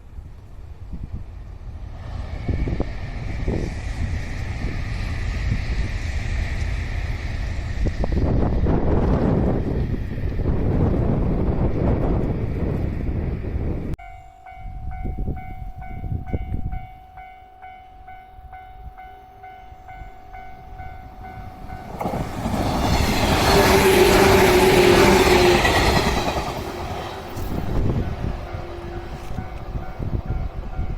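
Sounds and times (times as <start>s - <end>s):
wind buffeting microphone: 0.0s - 17.3s, 18.0s - 30.9s
train passing: 0.0s - 30.9s
level-crossing warning bell: 14.0s - 22.1s, 28.0s - 30.9s.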